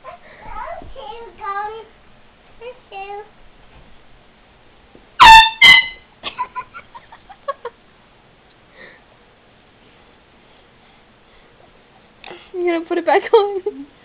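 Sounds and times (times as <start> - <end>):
air horn blasts: 5.2 - 6.0.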